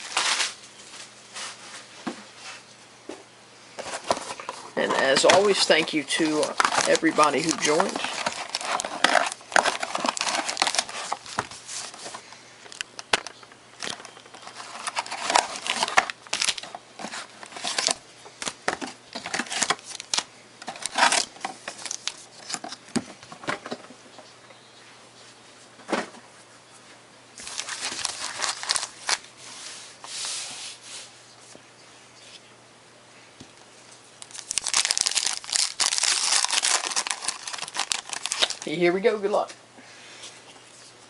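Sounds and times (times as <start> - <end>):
foil wrappers crinkling and tearing: 3.8 - 22.8, 27.4 - 29.3, 34.2 - 39.2.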